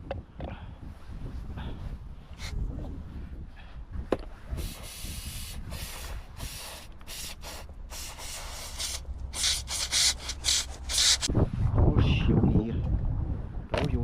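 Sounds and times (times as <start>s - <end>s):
scrubbing on greasy metal parts: 5.6s - 11.3s.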